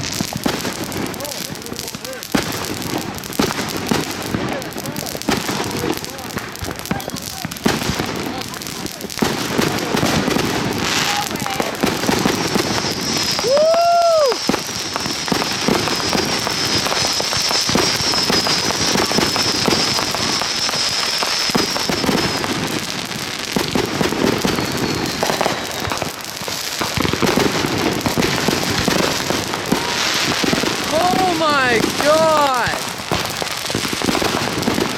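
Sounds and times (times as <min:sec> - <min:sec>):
fireworks crackling and popping: 0:00.0 - 0:34.9
high whistle: 0:24.5 - 0:25.4.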